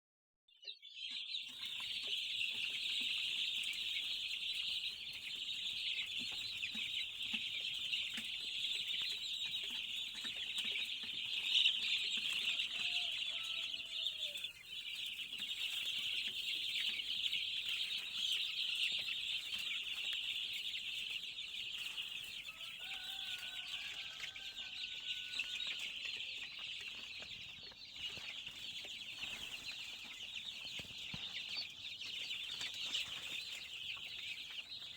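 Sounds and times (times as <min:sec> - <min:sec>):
chicks cheeping: 0:00.5 - 0:34.9
lower chicken calls: 0:11.4 - 0:14.7, 0:21.8 - 0:26.4.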